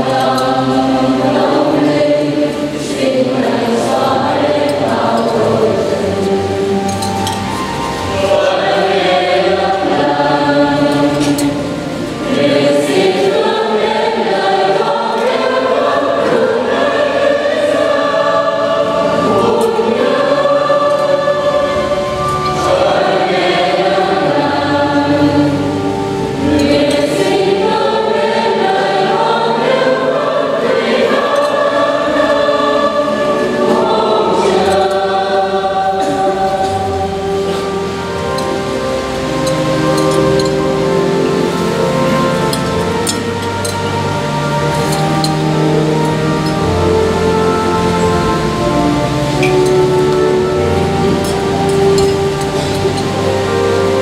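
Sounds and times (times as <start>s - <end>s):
choir singing a hymn: 0.0s - 54.0s.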